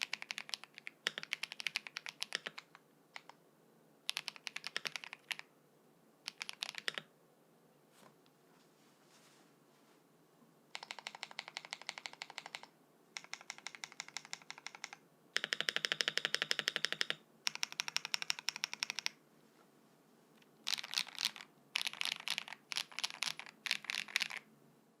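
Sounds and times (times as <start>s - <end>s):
fast typing on mechanical keyboard: 0.0s - 3.4s, 4.1s - 5.5s, 6.3s - 7.1s, 10.7s - 19.2s, 20.6s - 24.5s.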